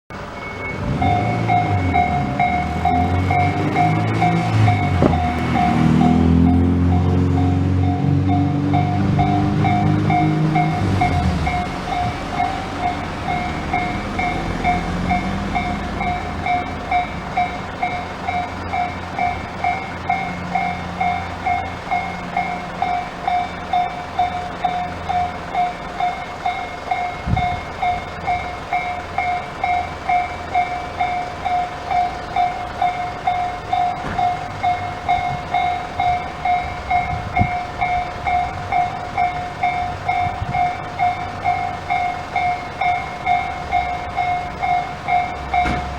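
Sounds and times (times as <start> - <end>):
level crossing warning bell: 0.1 - 45.9
train rumbling past: 0.1 - 45.9.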